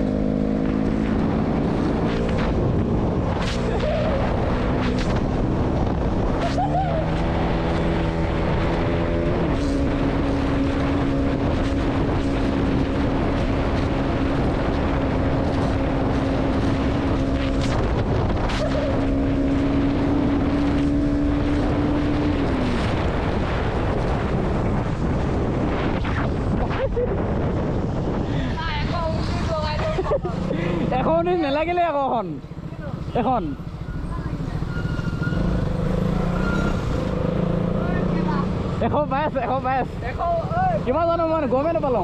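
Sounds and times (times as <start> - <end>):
wind noise on microphone: 0.0 - 31.4
motorcycle engine at speed: 0.0 - 42.0.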